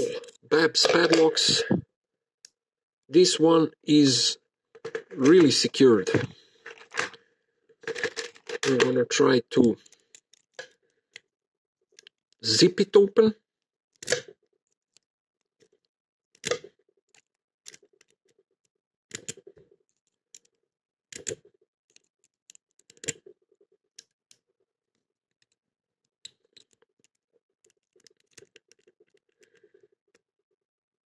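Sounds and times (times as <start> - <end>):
lock pick clicking and rattling: 7.8 - 8.9, 9.8 - 10.7, 19.1 - 21.4, 22.0 - 23.3, 26.2 - 29.5.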